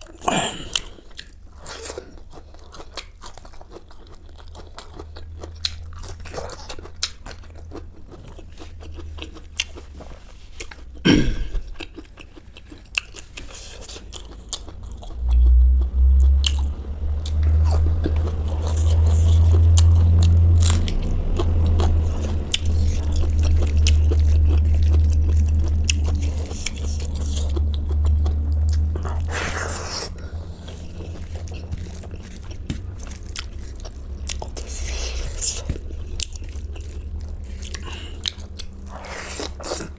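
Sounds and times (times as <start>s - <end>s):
crunchy chewing: 0.0s - 39.9s
deep low rumble: 11.0s - 12.0s, 14.1s - 39.9s.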